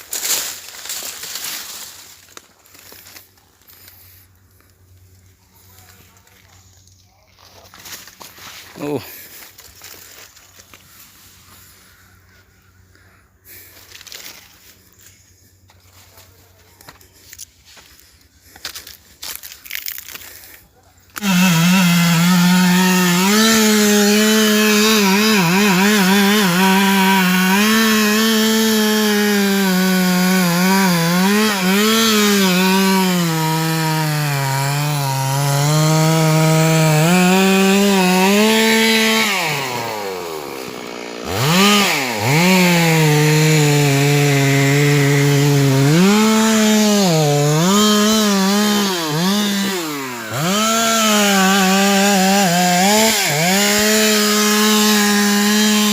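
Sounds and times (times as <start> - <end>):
chainsaw cutting tree: 21.1 - 55.9.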